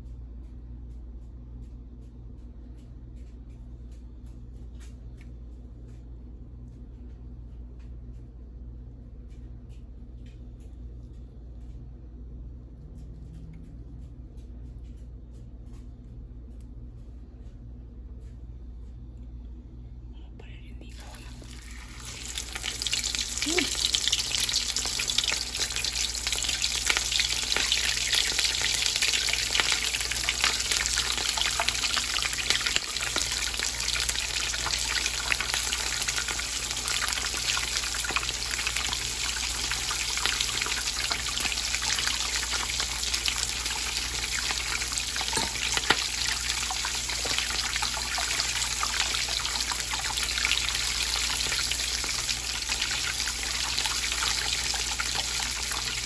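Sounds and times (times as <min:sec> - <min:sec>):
food frying in hot oil: 0:21.0 - 0:56.0.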